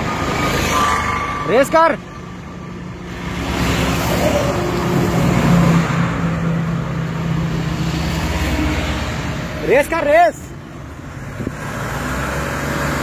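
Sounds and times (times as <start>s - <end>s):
diesel engine revving: 1.9s - 13.0s.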